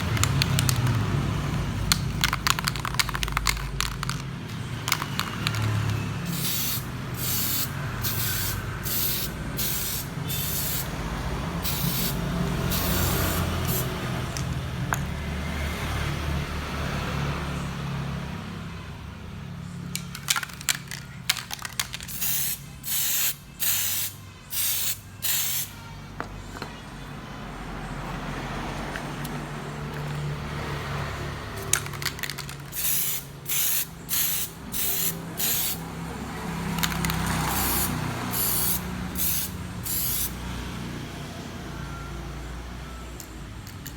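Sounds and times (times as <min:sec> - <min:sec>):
aerosol spray can hissing: 0:06.2 - 0:10.9, 0:11.6 - 0:13.9, 0:22.1 - 0:25.7, 0:32.7 - 0:35.8, 0:37.5 - 0:40.4.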